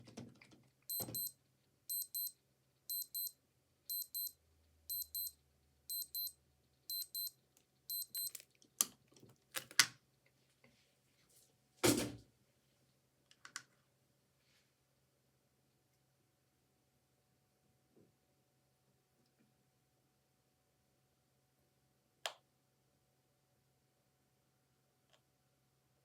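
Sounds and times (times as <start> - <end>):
digital watch alarm beeping: 0.9 - 8.4.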